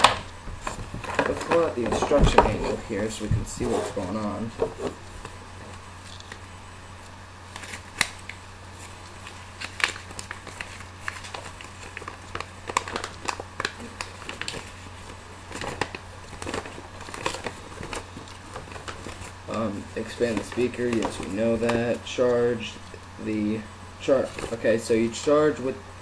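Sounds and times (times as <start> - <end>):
paper crinkling and rustling: 0.0 - 25.4
steady low hum: 0.0 - 26.0.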